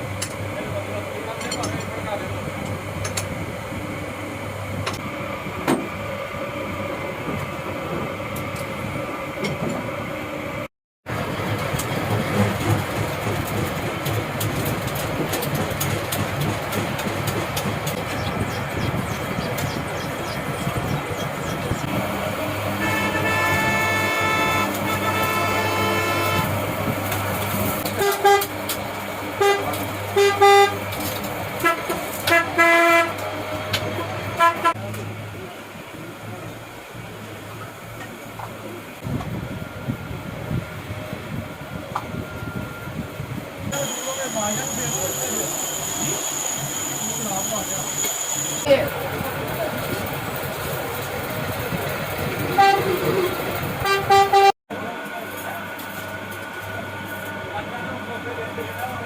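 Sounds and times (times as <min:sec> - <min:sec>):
vehicle horn tooting: 0:22.7 - 0:26.6, 0:27.9 - 0:28.6, 0:29.4 - 0:30.8, 0:31.6 - 0:33.2, 0:34.4 - 0:34.8, 0:52.6 - 0:53.2, 0:53.8 - 0:54.5.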